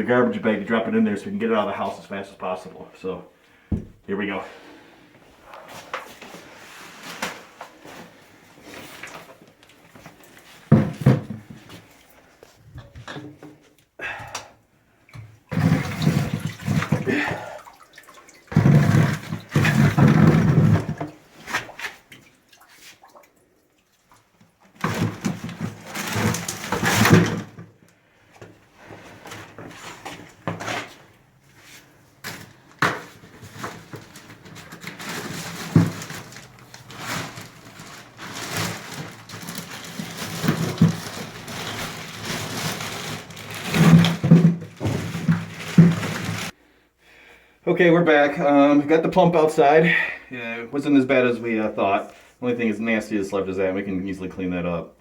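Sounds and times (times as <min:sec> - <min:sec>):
knocks and handling noise: 0:03.7 - 0:04.1, 0:05.5 - 0:13.8, 0:24.4 - 0:46.5
water sloshing off a pump: 0:15.1 - 0:27.5.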